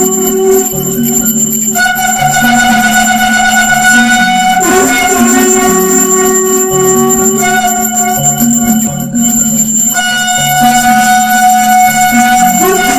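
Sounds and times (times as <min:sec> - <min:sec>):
background music: 0:00.0 - 0:12.9
temple bell ringing: 0:00.0 - 0:12.9.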